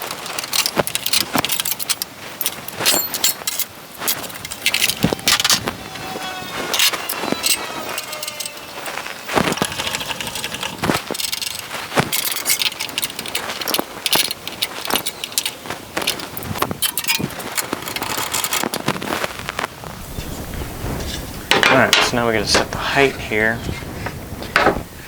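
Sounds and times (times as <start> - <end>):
metal blades clinking and rattling: 0.0 - 5.7, 6.6 - 19.0, 21.5 - 22.2.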